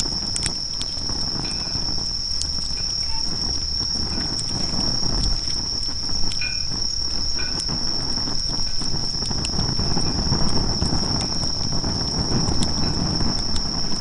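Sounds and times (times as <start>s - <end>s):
campfire crackling: 0.0s - 14.0s
crickets trilling: 0.0s - 14.0s.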